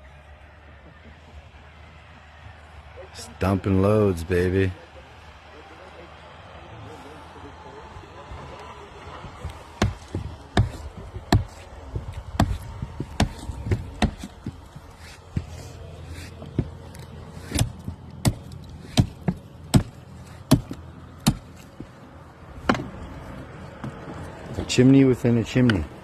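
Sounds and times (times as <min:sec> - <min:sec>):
sharp knocks breaking masonry: 0:09.4 - 0:14.6, 0:17.4 - 0:21.6.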